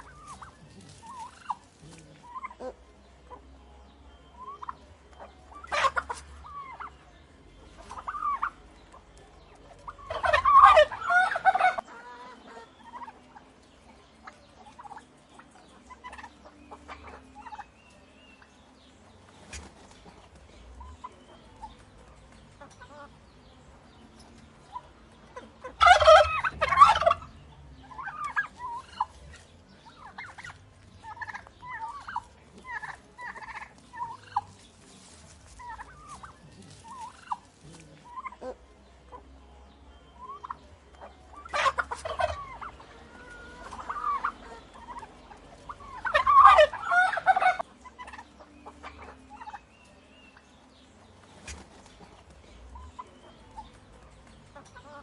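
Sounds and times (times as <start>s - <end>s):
soft turkey calls: 0.0s - 23.2s, 24.1s - 39.4s, 40.1s - 55.0s
turkeys gobbling: 0.0s - 23.4s, 24.1s - 39.3s, 40.1s - 55.0s.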